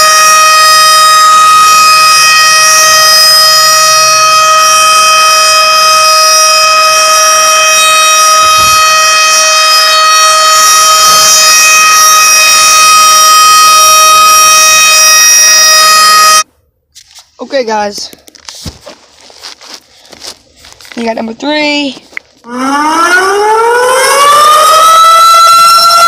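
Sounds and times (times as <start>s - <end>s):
civil defense siren: 0.0s - 16.5s, 22.4s - 26.0s.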